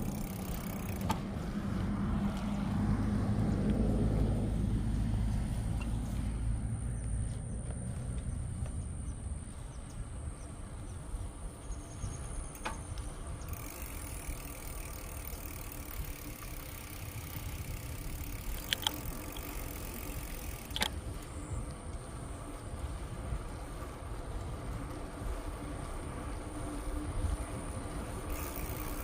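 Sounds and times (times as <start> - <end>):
bicycle tyres rumbling on trail: 0.0 - 29.0
bike clicks and rattles: 0.0 - 29.0.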